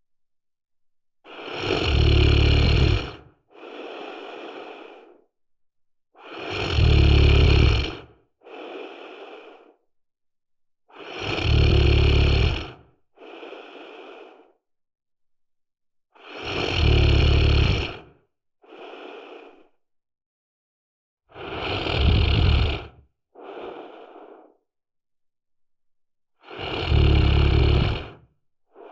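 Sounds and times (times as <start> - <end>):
person snoring: 1.3 - 5.2, 6.2 - 9.8, 10.9 - 14.6, 16.2 - 19.8, 21.3 - 24.6, 26.4 - 28.9
soft breath: 2.6 - 5.3, 6.2 - 9.8, 11.8 - 14.6, 16.2 - 19.8, 21.4 - 24.7, 26.4 - 28.9.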